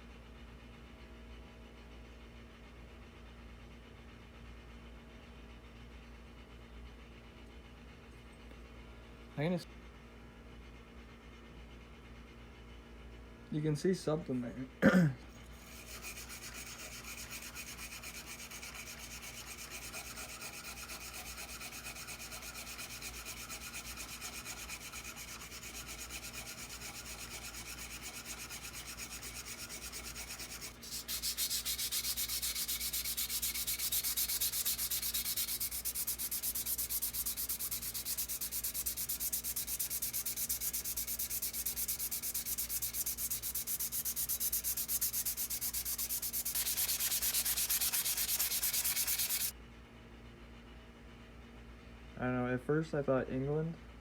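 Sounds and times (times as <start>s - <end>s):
sanding scraping: 15.5s - 49.5s.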